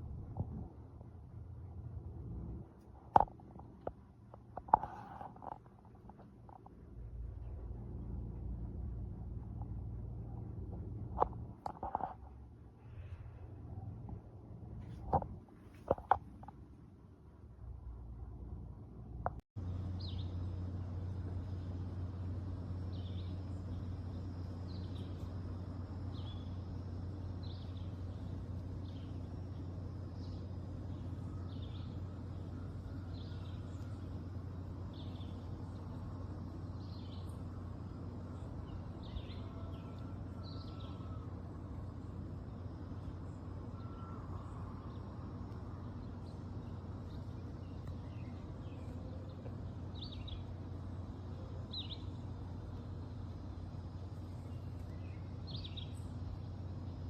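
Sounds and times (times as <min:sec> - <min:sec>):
steady low hum: 0:00.0 - 0:57.0
small birds chirping: 0:19.6 - 0:57.0.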